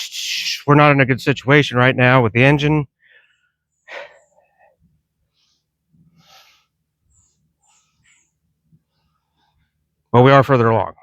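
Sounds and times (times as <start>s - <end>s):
man breathing: 3.0s - 10.0s.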